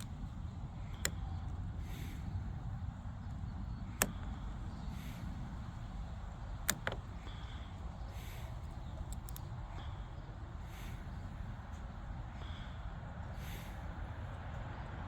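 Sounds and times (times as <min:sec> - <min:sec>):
sharp lock clicks: 0:00.0 - 0:09.7
steady low rumble: 0:00.0 - 0:15.0.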